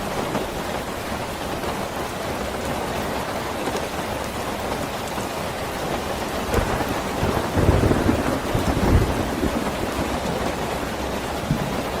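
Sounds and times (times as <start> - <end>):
steady rain: 0.0 - 12.0
low rumble of thunder: 6.4 - 12.0.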